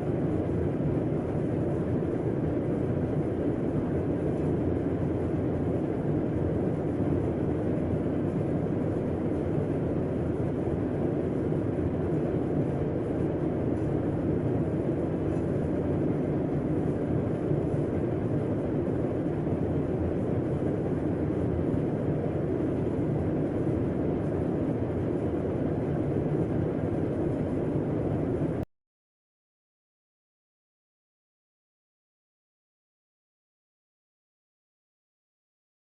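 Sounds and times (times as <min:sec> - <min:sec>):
air conditioner running: 0:00.0 - 0:28.7.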